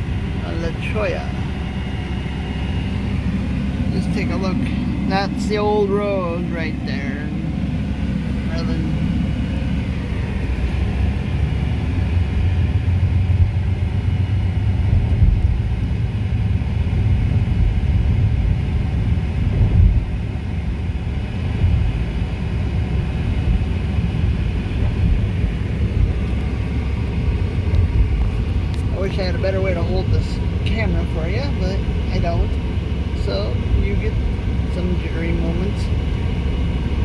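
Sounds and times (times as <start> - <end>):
car engine: 0.0 - 37.0
tyre and road noise: 0.0 - 37.0.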